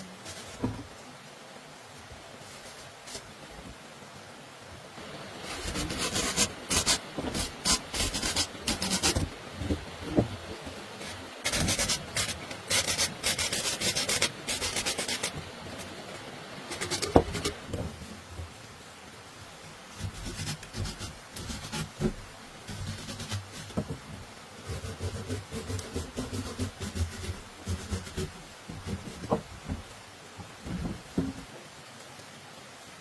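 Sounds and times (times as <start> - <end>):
tool rasping on hard surface: 11.0 - 15.4, 16.7 - 17.6.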